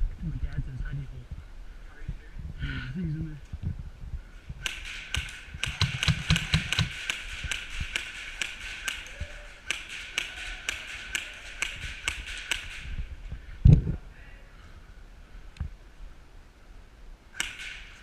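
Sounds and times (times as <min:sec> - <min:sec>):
airsoft guns firing: 0:04.6 - 0:13.2, 0:17.4 - 0:18.0.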